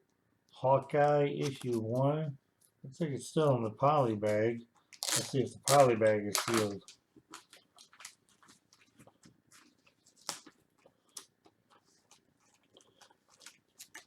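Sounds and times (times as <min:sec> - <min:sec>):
plastic bag crinkling: 0:04.9 - 0:10.7.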